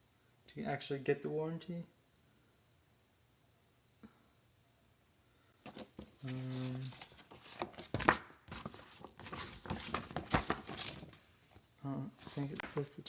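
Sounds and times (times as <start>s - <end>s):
packaging rustling and crinkling: 5.6s - 11.2s.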